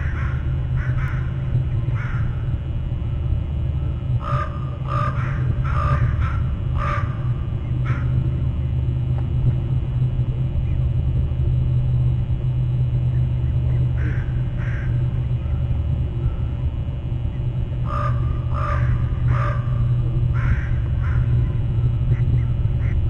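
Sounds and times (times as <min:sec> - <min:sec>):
crows cawing: 0:00.0 - 0:02.6, 0:04.1 - 0:08.4, 0:13.9 - 0:15.4, 0:17.8 - 0:23.0
steady low rumble: 0:00.0 - 0:23.0.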